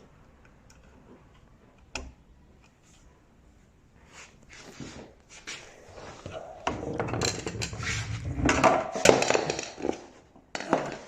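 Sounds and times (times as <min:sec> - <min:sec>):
hard objects clattering and knocking: 0:06.0 - 0:11.0.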